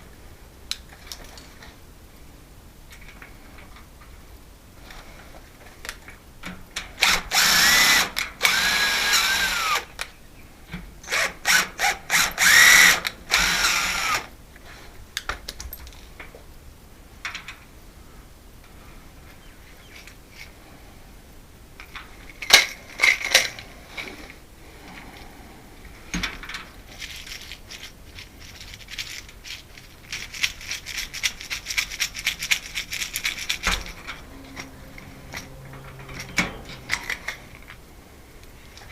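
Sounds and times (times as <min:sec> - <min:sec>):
power drill running: 0:07.0 - 0:09.9, 0:11.1 - 0:14.3
clicks and rattling of hardware: 0:26.1 - 0:37.8.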